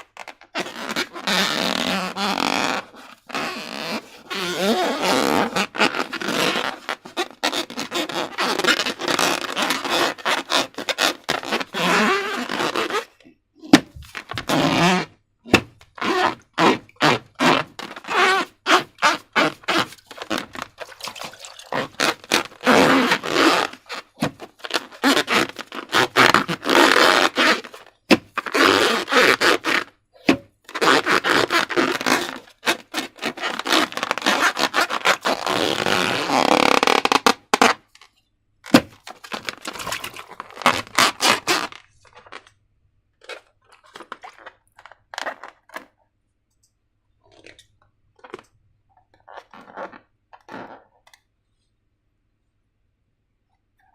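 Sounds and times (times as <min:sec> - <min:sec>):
slime squelching: 0:19.0 - 0:24.4, 0:38.7 - 0:42.5.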